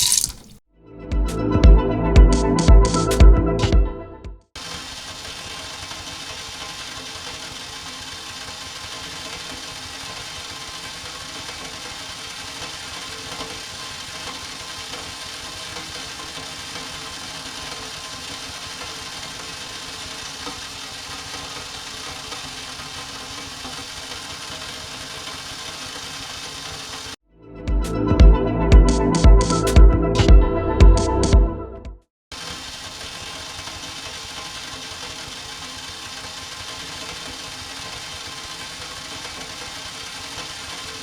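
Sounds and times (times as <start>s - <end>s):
engine running steadily: 4.6s - 27.2s, 32.3s - 41.0s.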